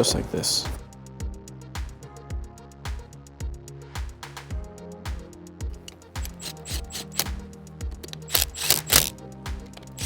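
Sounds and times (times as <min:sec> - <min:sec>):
deep kick drum beat: 0:00.0 - 0:05.8.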